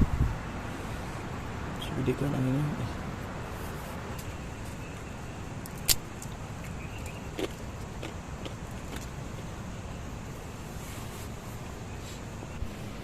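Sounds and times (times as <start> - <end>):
strong wind blowing: 0.0 - 2.0.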